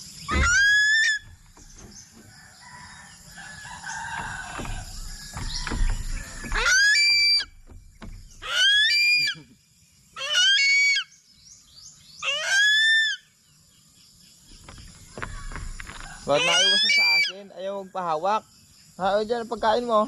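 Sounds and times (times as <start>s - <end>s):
eagle screaming: 0.3s - 1.2s, 8.4s - 9.4s, 10.2s - 11.1s, 12.2s - 13.2s, 16.3s - 17.5s.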